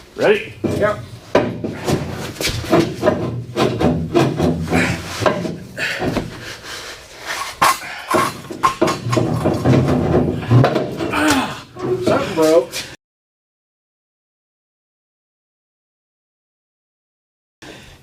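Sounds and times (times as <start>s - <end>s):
metal clanks of breaker bar: 0.6s - 6.2s, 7.6s - 12.2s.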